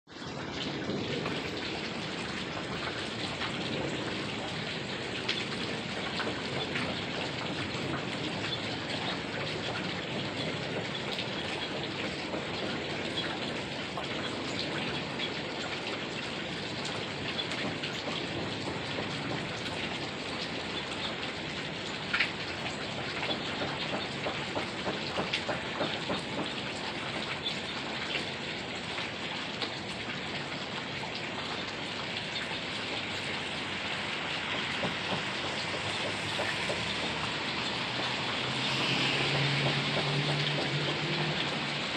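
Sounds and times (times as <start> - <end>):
heavy rain falling: 0.1 - 41.9.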